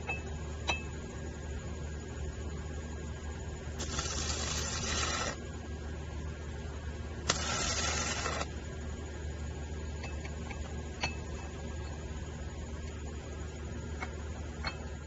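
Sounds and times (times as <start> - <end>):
steady low hum: 0.0 - 15.0
welding arc hissing: 3.8 - 5.4, 7.2 - 8.6.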